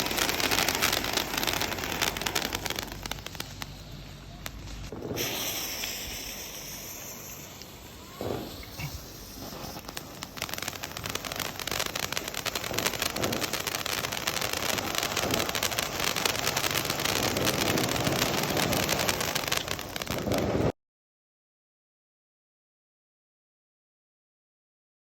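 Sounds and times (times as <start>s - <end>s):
firework fountain crackling: 0.0s - 20.8s.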